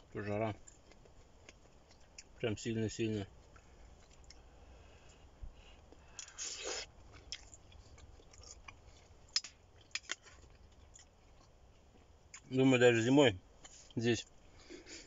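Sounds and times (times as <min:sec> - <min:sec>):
man chewing: 0:00.6 - 0:02.4, 0:03.4 - 0:12.5.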